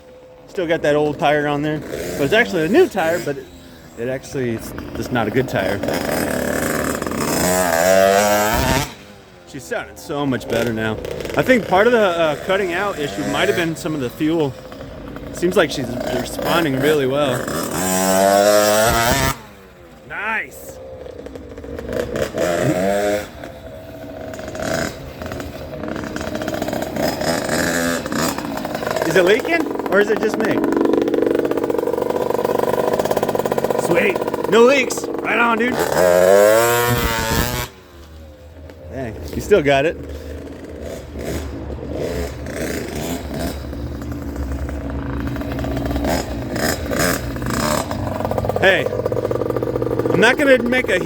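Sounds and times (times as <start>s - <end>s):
small off-road engine revving: 0.0s - 51.0s.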